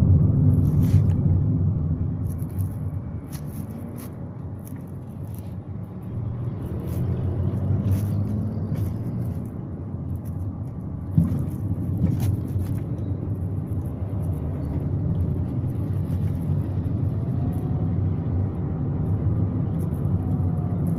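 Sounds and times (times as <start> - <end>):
car road rumble: 0.0 - 20.9
rattles and clicks from car front: 6.7 - 17.6.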